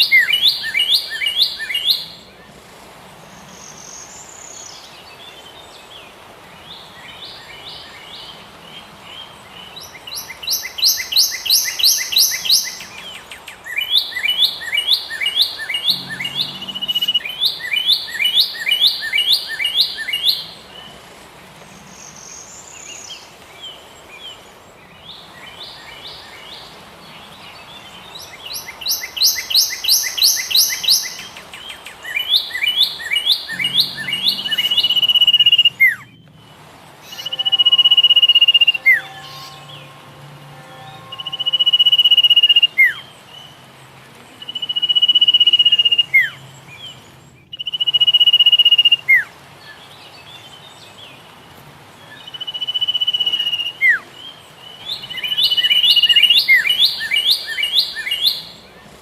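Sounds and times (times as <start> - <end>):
faint background hiss: 0.0 - 59.0
songbirds chirping: 0.0 - 59.0.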